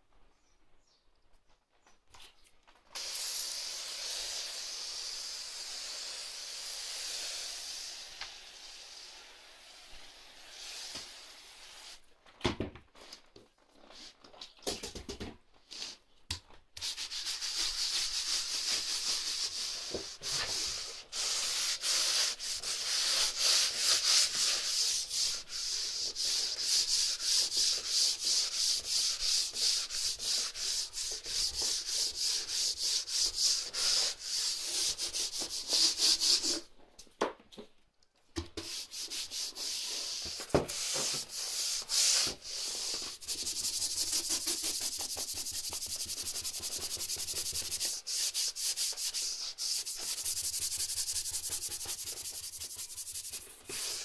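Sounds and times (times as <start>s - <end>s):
scrubbing wet wooden floor: 16.9s - 36.6s, 38.6s - 54.0s.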